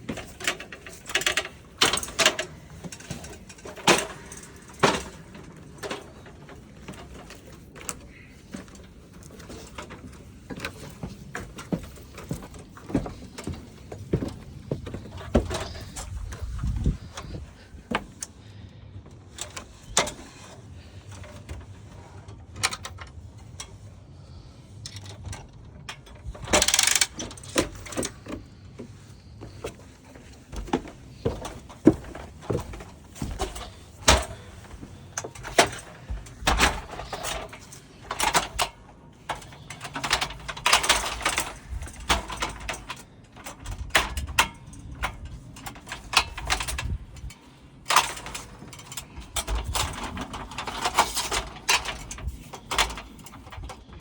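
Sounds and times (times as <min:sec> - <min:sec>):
handling knocks and clicks: 0:00.0 - 0:18.4, 0:24.9 - 0:54.0.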